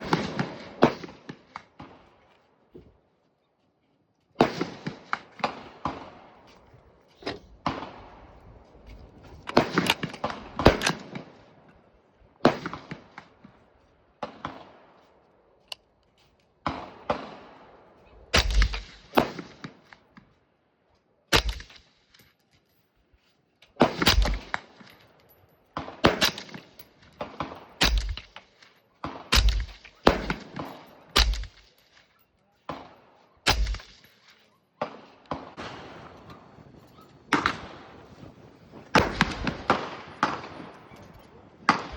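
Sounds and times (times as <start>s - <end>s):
suppressed gunshots: 0.0s - 2.0s, 7.2s - 8.1s, 9.4s - 11.4s, 18.3s - 20.1s, 21.3s - 21.9s, 23.8s - 25.0s, 25.8s - 32.0s, 32.7s - 34.2s, 38.9s - 41.0s.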